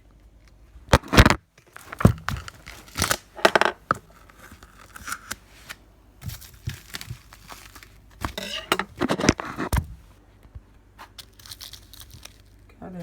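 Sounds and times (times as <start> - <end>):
knife ripping plastic packaging: 0.9 - 9.7, 11.1 - 12.7.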